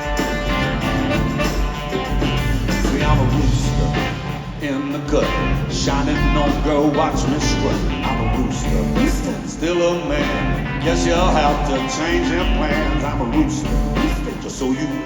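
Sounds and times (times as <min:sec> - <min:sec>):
live rock band playing: 0:00.0 - 0:15.0.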